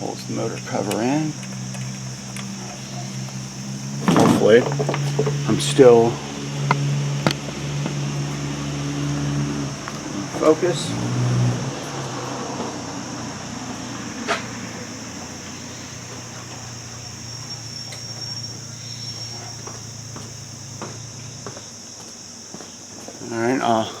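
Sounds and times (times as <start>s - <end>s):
clicks of handling motor parts: 0.5s - 3.4s, 4.0s - 5.6s, 6.6s - 8.0s.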